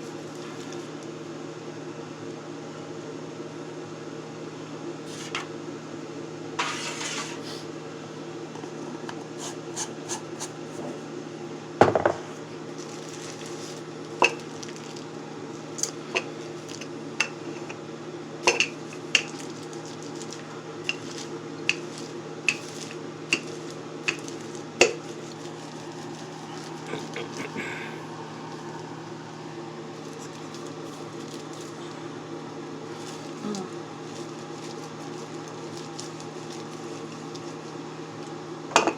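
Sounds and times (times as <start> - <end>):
steady low hum: 0.0 - 38.9
utensils and dishes clinking: 18.4 - 19.4.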